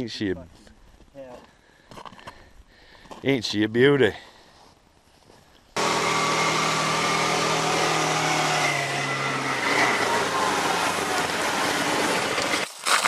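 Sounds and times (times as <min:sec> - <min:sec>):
utility vehicle engine running: 0:05.8 - 0:12.6.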